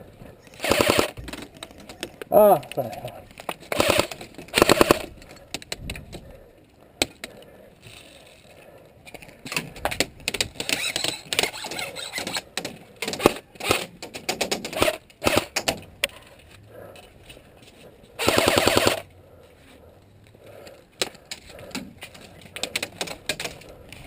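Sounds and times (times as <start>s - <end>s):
airsoft guns firing bursts: 0.6s - 1.2s, 3.7s - 5.1s, 13.1s - 15.7s, 18.2s - 19.0s
clatter and rustling: 7.0s - 24.0s.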